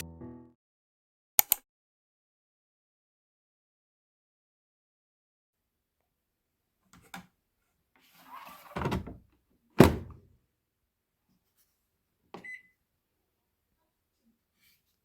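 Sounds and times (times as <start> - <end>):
small click: 1.4 - 1.6
door or lid thunk: 9.8 - 10.2.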